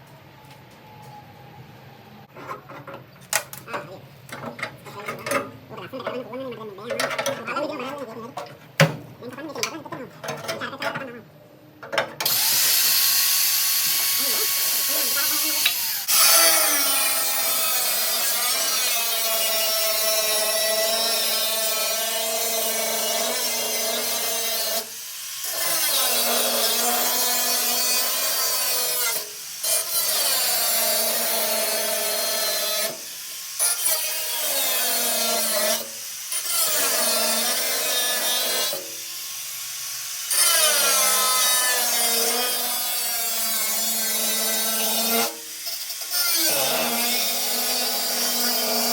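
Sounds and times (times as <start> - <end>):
power drill whining: 12.2 - 18.2, 40.2 - 48.9.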